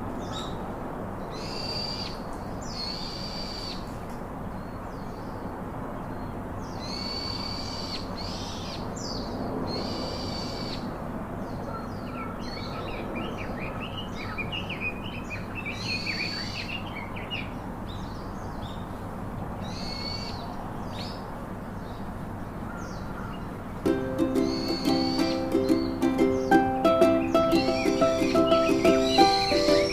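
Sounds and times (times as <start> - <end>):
low background noise: 0.0 - 29.9
harsh high bird call: 23.9 - 29.9
quick bird chirps: 24.4 - 29.9.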